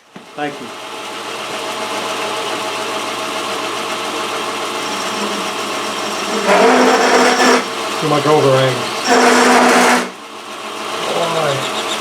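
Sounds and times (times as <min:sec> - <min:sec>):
metal lathe running: 0:00.7 - 0:12.0
high squeal: 0:04.6 - 0:09.6.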